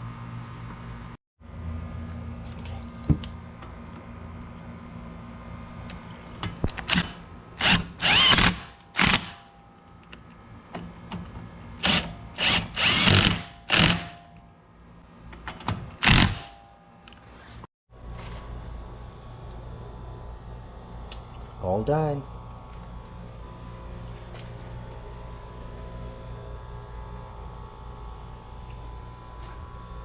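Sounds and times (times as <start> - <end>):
power tool bursts: 6.8 - 9.4, 11.8 - 14.2, 16.0 - 16.6.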